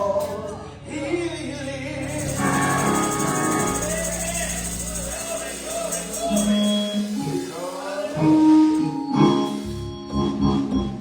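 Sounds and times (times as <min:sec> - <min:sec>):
voices singing: 0:00.0 - 0:09.2
sustained instrumental accompaniment: 0:02.0 - 0:09.9.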